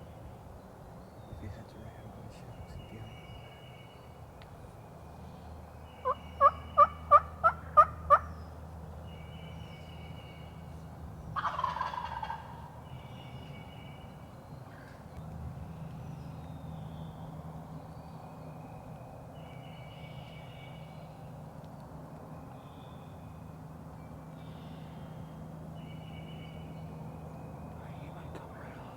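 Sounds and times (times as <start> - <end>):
turkey gobbling: 6.0 - 8.3, 11.4 - 12.7
turkey yelps: 6.0 - 8.3, 11.4 - 12.6.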